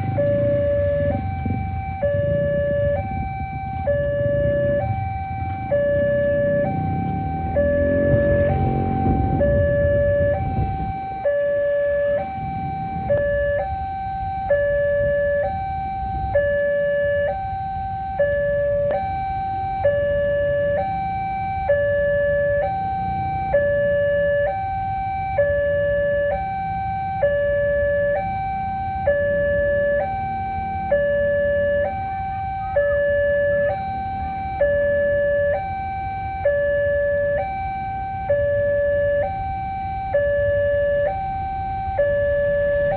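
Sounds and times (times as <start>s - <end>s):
two-tone crossing warning siren: 0.0s - 42.9s
low rumble: 6.6s - 11.0s.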